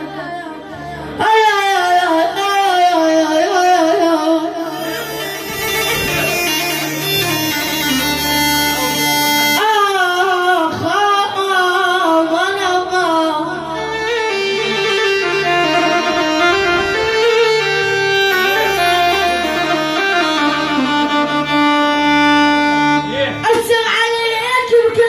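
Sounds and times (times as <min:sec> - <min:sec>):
ornamented melody: 0:04.0 - 0:10.6, 0:13.5 - 0:24.3.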